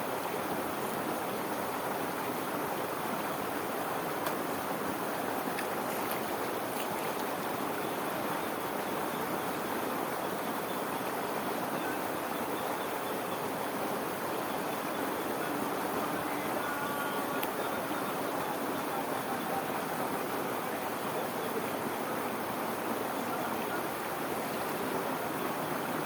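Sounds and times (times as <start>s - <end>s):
water rushing over small waterfall: 0.0s - 26.0s.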